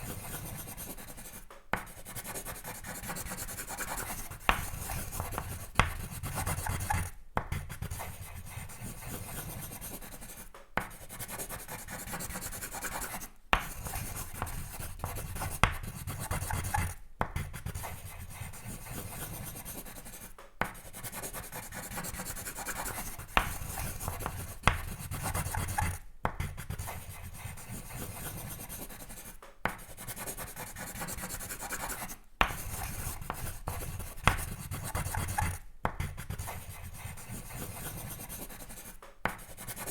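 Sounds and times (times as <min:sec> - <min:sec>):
pencil scratching on paper: 0:00.0 - 0:39.9.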